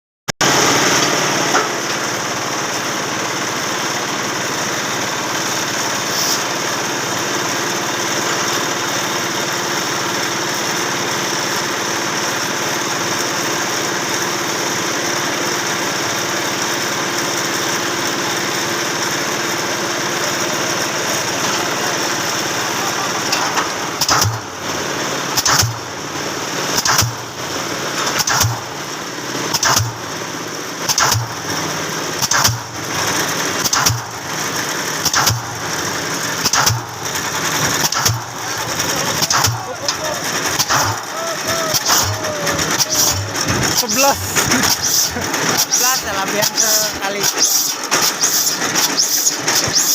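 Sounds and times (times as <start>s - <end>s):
engine running steadily: 0.4s - 49.9s.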